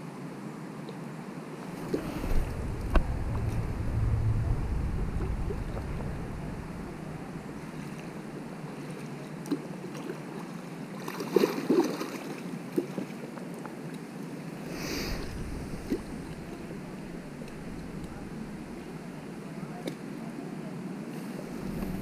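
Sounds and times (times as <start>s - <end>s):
flowing creek water: 6.9s - 19.5s
short hiss: 14.6s - 18.7s.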